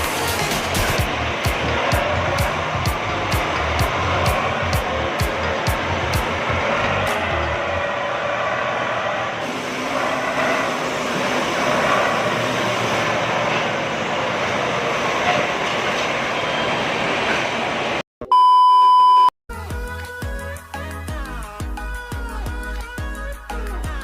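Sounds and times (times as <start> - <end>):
music with a beat: 0.0 - 7.2, 19.5 - 24.0
electronic beep tone: 18.2 - 19.3.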